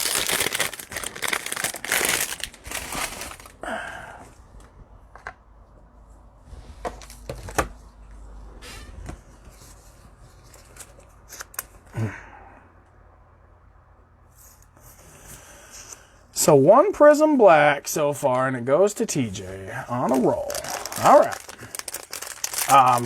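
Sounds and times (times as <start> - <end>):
cellophane wrappers crinkling: 0.0 - 3.7, 19.9 - 23.0.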